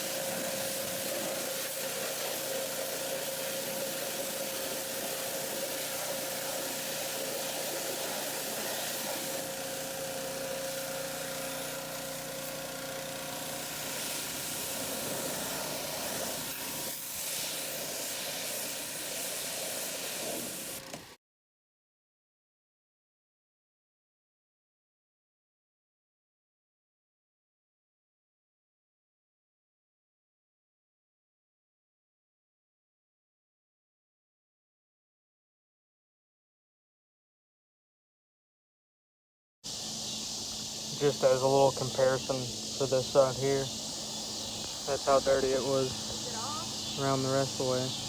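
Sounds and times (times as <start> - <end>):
pressure washer spraying: 0.0 - 21.1, 39.7 - 48.0.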